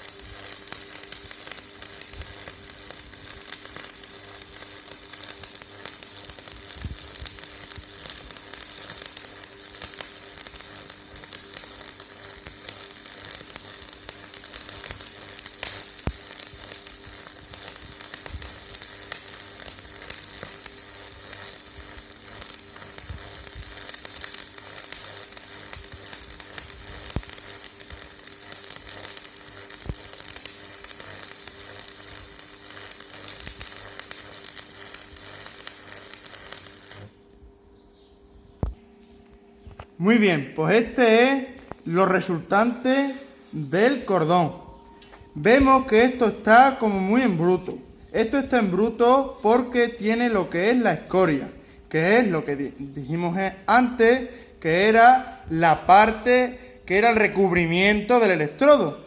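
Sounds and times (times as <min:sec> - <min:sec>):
welding arc crackling: 0:00.0 - 0:37.4, 0:45.4 - 0:59.0
sharp welding pops: 0:00.0 - 0:37.6, 0:38.6 - 0:40.0.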